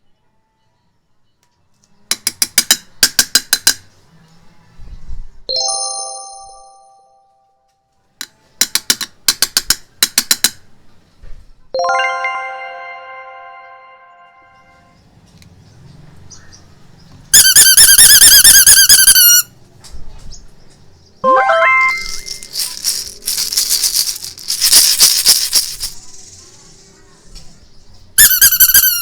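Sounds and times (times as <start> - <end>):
ringing chime: 11.8 - 15.0, 21.2 - 22.5.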